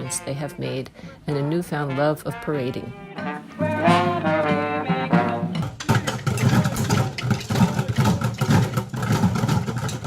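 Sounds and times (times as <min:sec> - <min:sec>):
samba percussion: 0:02.8 - 0:10.0
low thumping drum beats: 0:03.2 - 0:09.2.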